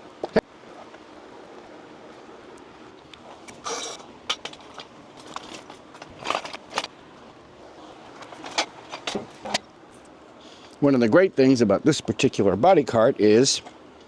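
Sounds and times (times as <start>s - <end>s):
short metal scrape: 3.6s - 4.6s.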